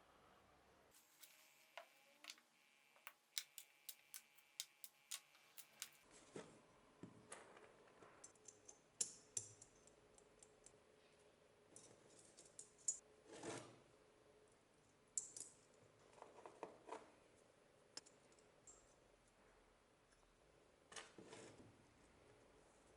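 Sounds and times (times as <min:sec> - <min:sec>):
small tool parts clicking and knocking: 0:01.0 - 0:06.0.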